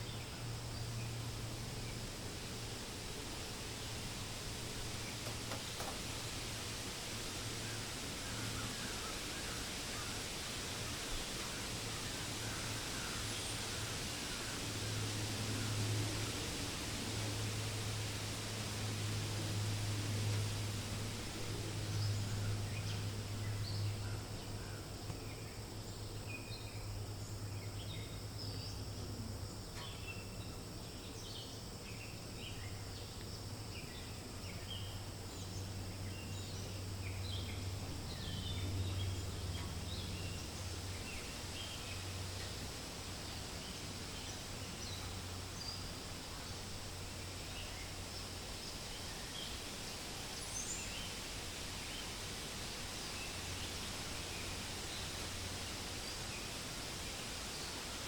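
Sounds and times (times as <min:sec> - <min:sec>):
wind in leaves: 0:00.0 - 0:58.0
small birds chirping: 0:03.6 - 0:10.6.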